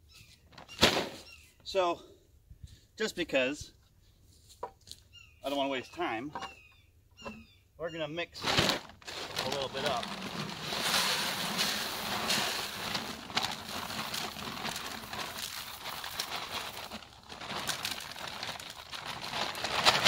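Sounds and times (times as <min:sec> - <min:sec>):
dry corn kernels poured and stirred: 0:09.1 - 0:20.0.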